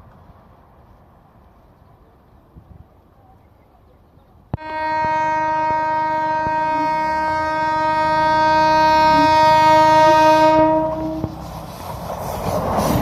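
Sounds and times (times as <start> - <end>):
approaching train rumble: 0.0 - 13.0
locomotive horn blast: 4.6 - 11.4.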